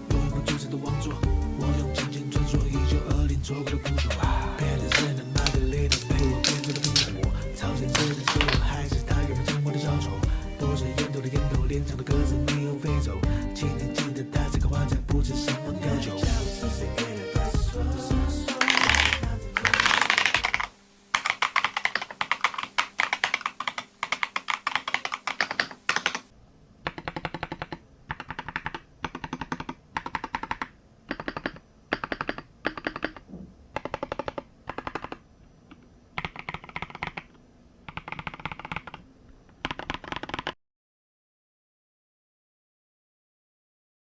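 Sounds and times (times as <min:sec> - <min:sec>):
mechanical keyboard typing: 0:04.9 - 0:07.3, 0:07.9 - 0:08.7, 0:18.5 - 0:40.6.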